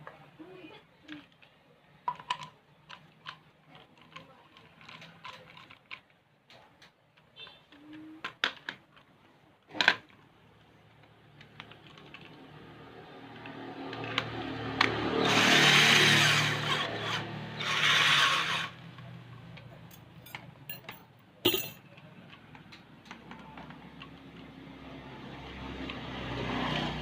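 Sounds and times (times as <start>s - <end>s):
jigsaw sawing: 13.9s - 18.8s
drill motor hum: 15.0s - 18.8s.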